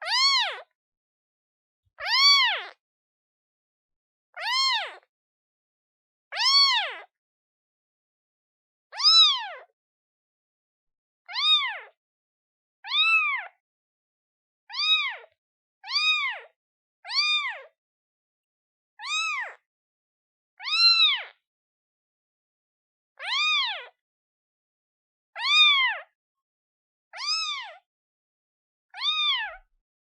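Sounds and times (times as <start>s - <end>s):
kitten meowing: 0.0s - 0.7s, 2.0s - 2.8s, 4.4s - 5.1s, 6.3s - 7.1s, 8.9s - 9.7s, 11.3s - 11.9s, 12.9s - 13.5s, 14.7s - 15.3s, 15.9s - 16.5s, 17.1s - 17.7s, 19.0s - 19.6s, 20.6s - 21.3s, 23.2s - 23.9s, 25.4s - 26.0s, 27.2s - 27.8s, 29.0s - 29.6s.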